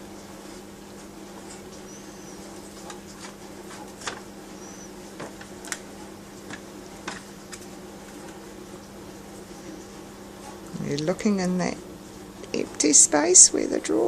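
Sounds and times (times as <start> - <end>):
steady low hum: 0.0 - 14.0
bird chirp: 1.8 - 2.6, 4.5 - 5.0.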